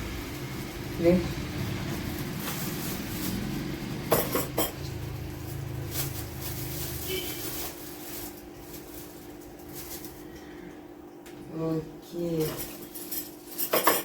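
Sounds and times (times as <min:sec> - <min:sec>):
parts and packaging clinking: 0:00.0 - 0:10.4.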